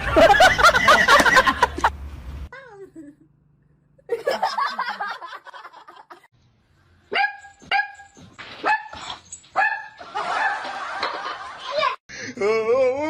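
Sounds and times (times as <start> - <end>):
dog barking: 7.1 - 10.6.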